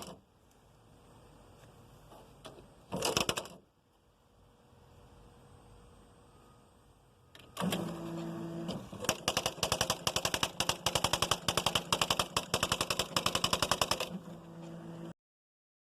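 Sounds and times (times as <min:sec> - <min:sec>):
typewriter motor whir: 0:02.9 - 0:03.6, 0:07.4 - 0:15.1
typewriter type strikes: 0:03.0 - 0:03.6, 0:09.0 - 0:14.2.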